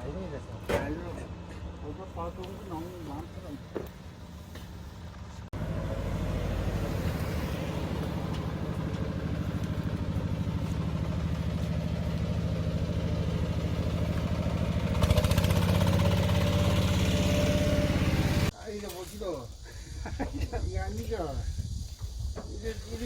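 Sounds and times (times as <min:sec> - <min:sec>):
diesel engine chugging: 0:05.3 - 0:18.5.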